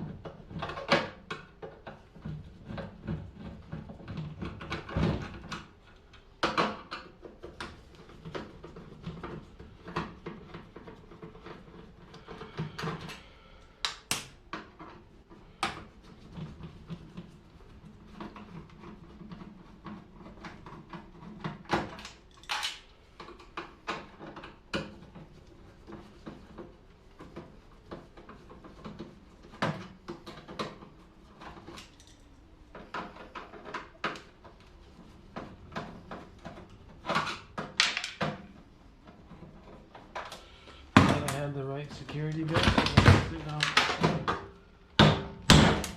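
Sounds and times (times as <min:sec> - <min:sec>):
clinks of tools and metal parts: 0:22.1 - 0:22.9, 0:31.8 - 0:32.3.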